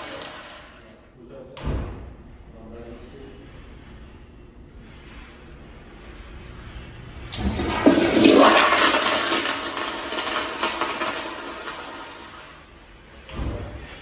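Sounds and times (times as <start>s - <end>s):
toilet flushing: 0.0s - 1.1s, 7.3s - 13.8s.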